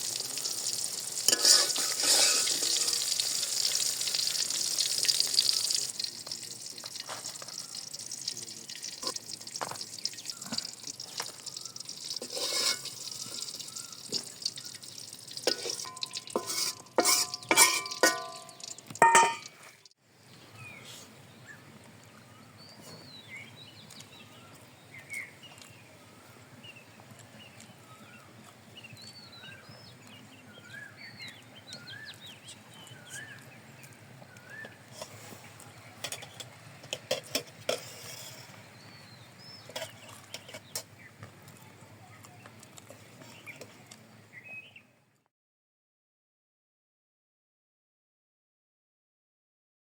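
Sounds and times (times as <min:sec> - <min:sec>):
food sizzling in a pot: 0:00.0 - 0:19.7
metal utensil scraping and clinking: 0:01.2 - 0:03.3, 0:10.4 - 0:14.2, 0:15.3 - 0:19.6, 0:36.0 - 0:38.6, 0:39.6 - 0:40.9
birds chirping: 0:02.6 - 0:36.7, 0:38.4 - 0:44.9.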